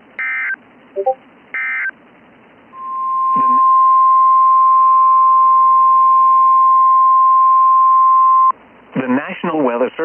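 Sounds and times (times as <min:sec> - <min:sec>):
loud steady alarm beep: 0:00.2 - 0:01.9.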